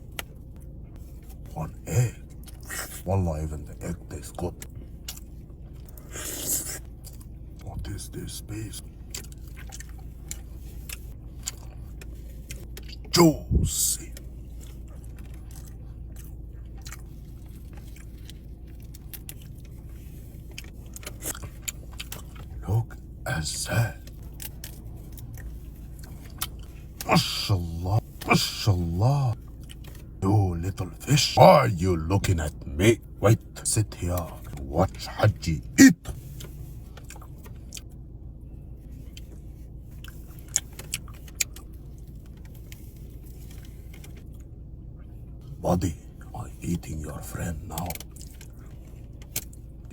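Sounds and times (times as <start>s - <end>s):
chewing with wet mouth clicks: 0.0s - 1.5s, 2.2s - 3.0s, 3.7s - 7.9s, 8.8s - 13.2s, 14.0s - 27.4s, 29.3s - 30.2s, 36.0s - 38.1s, 38.7s - 45.5s, 47.3s - 49.9s
low hum: 0.0s - 49.9s.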